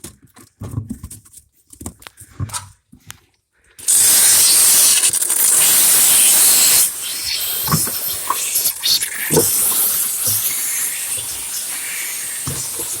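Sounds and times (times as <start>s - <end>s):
loud steady hiss: 3.8s - 13.0s.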